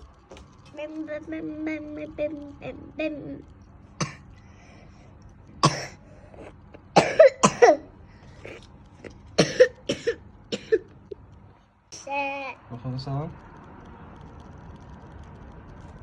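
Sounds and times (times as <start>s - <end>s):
person coughing: 4.0s - 4.2s, 5.6s - 6.0s, 6.9s - 7.8s, 9.4s - 10.9s.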